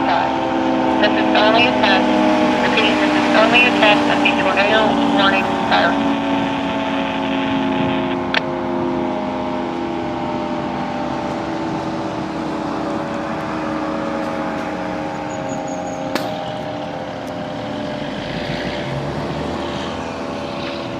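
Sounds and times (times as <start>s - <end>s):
multi-toned fire siren wail: 0.0s - 20.9s.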